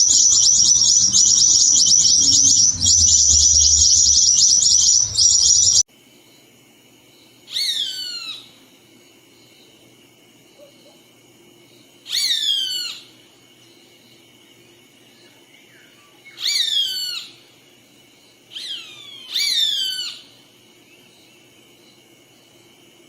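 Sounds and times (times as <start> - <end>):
bird calling loudly: 0.0 - 5.8.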